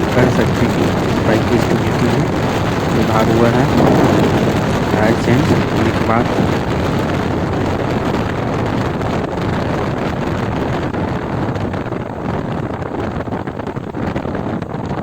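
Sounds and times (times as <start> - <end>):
motorcycle running: 0.0 - 12.0
wind buffeting microphone: 0.0 - 15.0.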